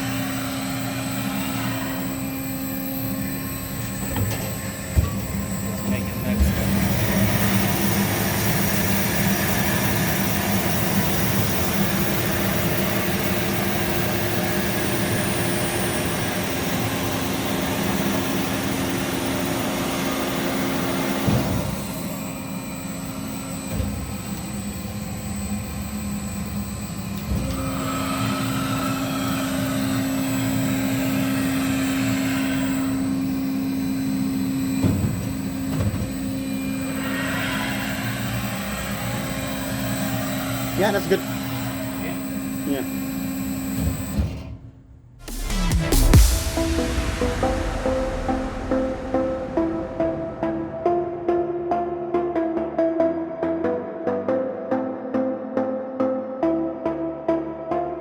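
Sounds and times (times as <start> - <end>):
bandsaw humming: 0.0 - 44.5.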